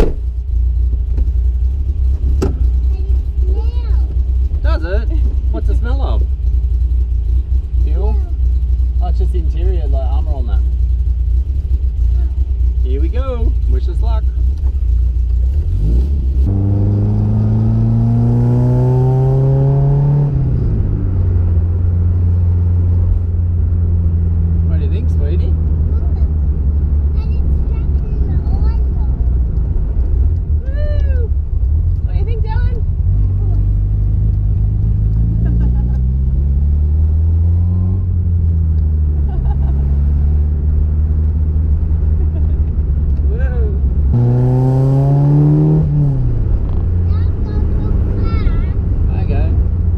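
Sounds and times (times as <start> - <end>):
car engine accelerating: 0.0 - 49.9.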